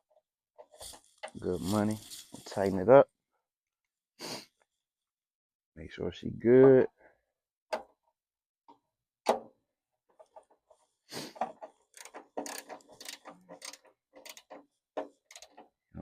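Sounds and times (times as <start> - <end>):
screw being tightened clicks: 12.0 - 15.7.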